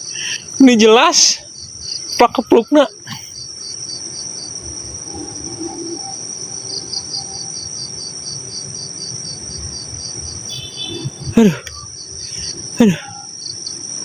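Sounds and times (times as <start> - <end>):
crickets trilling: 0.0 - 14.0
insect chirping in a pulse: 0.0 - 14.0.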